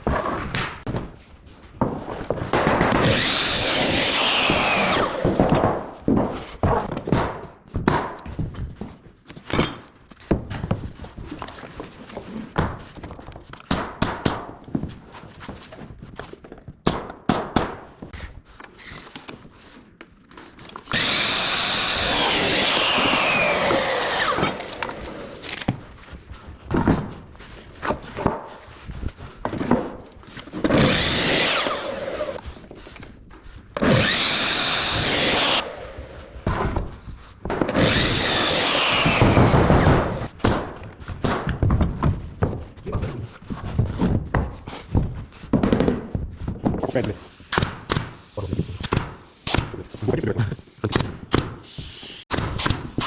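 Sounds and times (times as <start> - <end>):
power saw running: 3.0 - 5.4, 20.9 - 25.6, 33.8 - 36.0, 37.7 - 40.3
timber knocks and thumps: 36.4 - 49.9.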